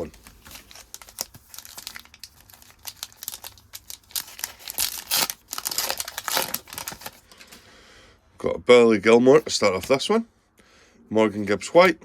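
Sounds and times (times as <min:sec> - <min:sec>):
foil wrapper crinkling and tearing: 0:00.0 - 0:07.4.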